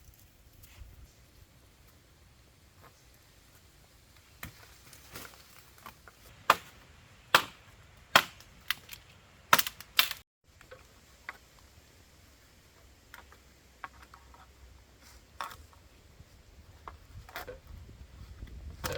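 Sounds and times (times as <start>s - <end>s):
sharp chopping strikes: 6.4s - 7.6s, 8.2s - 8.5s.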